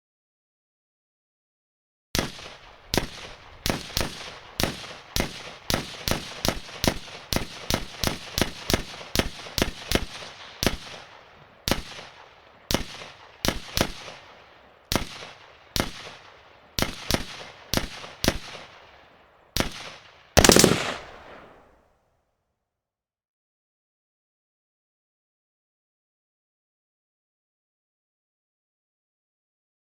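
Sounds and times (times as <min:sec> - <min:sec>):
rifle shots echoing: 0:20.4 - 0:21.6.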